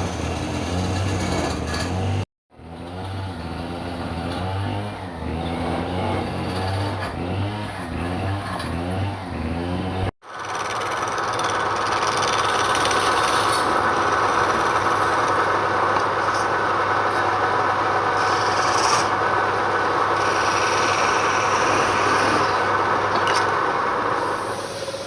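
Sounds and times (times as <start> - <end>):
tool scraping spinning wood: 0.0 - 2.2, 5.2 - 9.4, 10.2 - 25.0
lathe motor hum: 10.3 - 25.0.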